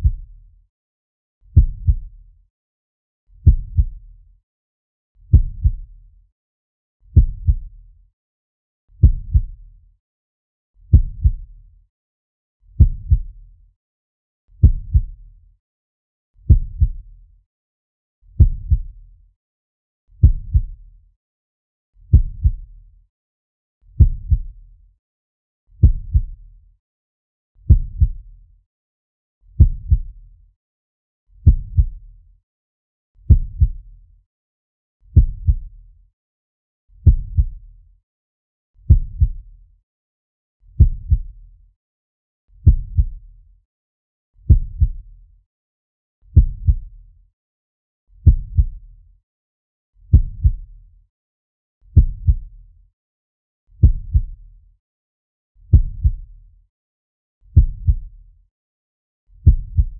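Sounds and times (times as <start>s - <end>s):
slow heartbeat thumps: 1.6s - 2.1s, 3.4s - 4.0s, 5.3s - 5.8s, 7.2s - 7.6s, 9.0s - 9.6s, 10.9s - 11.4s, 12.8s - 13.3s, 14.6s - 15.2s, 16.5s - 17.0s, 18.4s - 18.9s, 20.2s - 20.8s, 22.1s - 22.6s, 24.0s - 24.5s, 25.8s - 26.4s, 27.7s - 28.2s, 29.6s - 30.1s, 31.4s - 32.0s, 33.3s - 33.8s, 35.2s - 35.6s, 37.0s - 37.6s, 38.9s - 39.4s, 40.8s - 41.3s, 42.6s - 43.1s, 44.5s - 45.0s, 46.4s - 46.9s, 48.2s - 48.8s, 50.1s - 50.6s, 52.0s - 52.4s, 53.8s - 54.4s, 55.7s - 56.2s, 57.6s - 58.1s, 59.4s - 59.9s.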